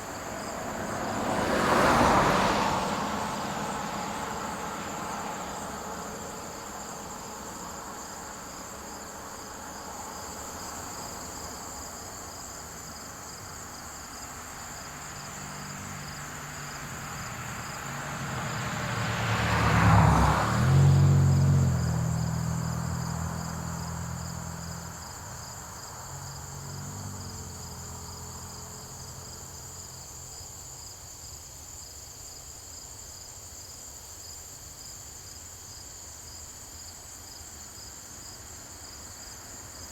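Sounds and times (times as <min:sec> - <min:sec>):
motor vehicle driving past: 0:00.0 - 0:11.8, 0:14.5 - 0:30.3
crickets chirring: 0:00.0 - 0:39.9.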